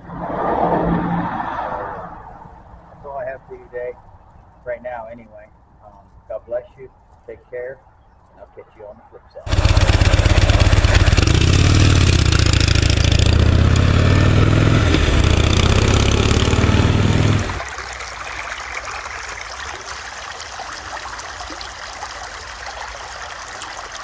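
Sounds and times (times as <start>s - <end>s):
vehicle engine rumbling: 9.4s - 17.7s
road noise hiss: 9.5s - 24.0s.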